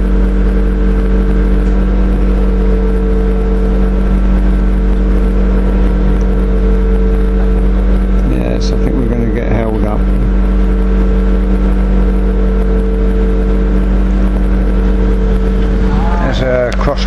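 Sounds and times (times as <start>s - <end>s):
train drone and rumble: 0.0s - 17.0s.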